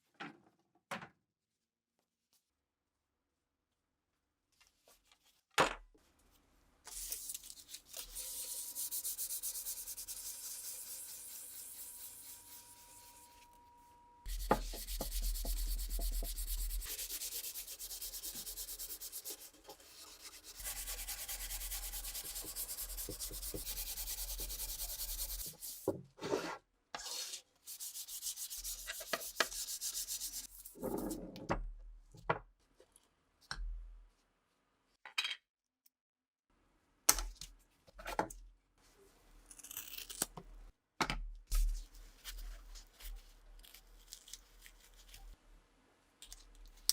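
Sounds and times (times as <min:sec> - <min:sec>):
sandpaper rubbing: 0:06.9 - 0:13.5, 0:14.3 - 0:25.9, 0:27.0 - 0:30.8.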